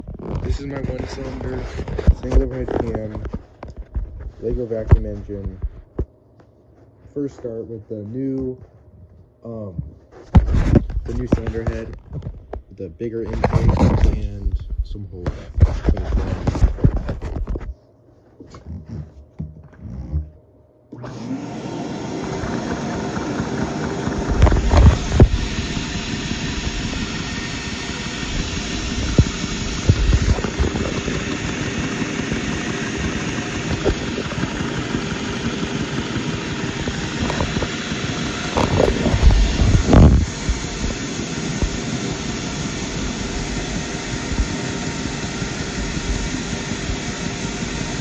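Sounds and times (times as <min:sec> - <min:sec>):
vacuum cleaner humming: 0:00.0 - 0:03.3, 0:20.9 - 0:48.0
toy vacuum engine running: 0:21.0 - 0:48.0.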